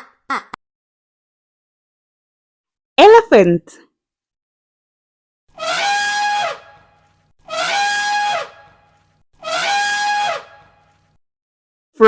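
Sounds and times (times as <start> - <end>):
elephant trumpeting: 5.6 - 8.8, 9.4 - 10.8.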